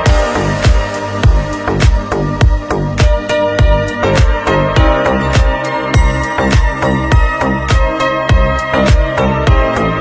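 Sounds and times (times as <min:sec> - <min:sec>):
sharp percussion hits: 0:00.0 - 0:03.3, 0:04.2 - 0:08.5
kick drum beat: 0:00.0 - 0:09.7
sustained instrumental tones: 0:04.9 - 0:08.1.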